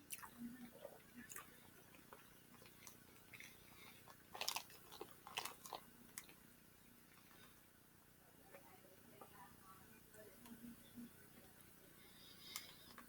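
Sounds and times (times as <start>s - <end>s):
person chewing food: 0.0s - 6.4s.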